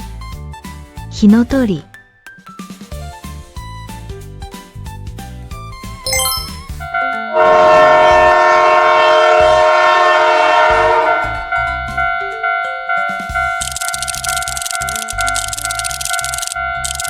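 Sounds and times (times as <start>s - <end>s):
children's background music: 6.1s - 6.9s
train horn chord: 7.3s - 12.1s.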